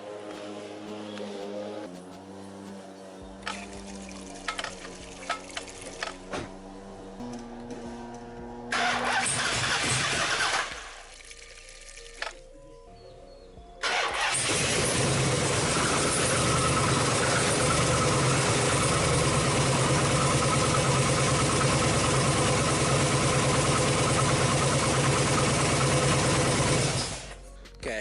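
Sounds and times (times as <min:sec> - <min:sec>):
car engine idling: 0:02.6 - 0:11.0, 0:13.8 - 0:27.4.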